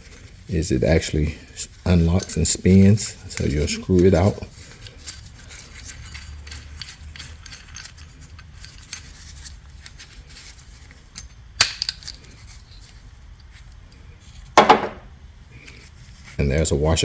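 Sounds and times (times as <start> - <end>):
low steady hum: 0.0 - 16.4
metal bolt and washer clicks: 11.2 - 13.0.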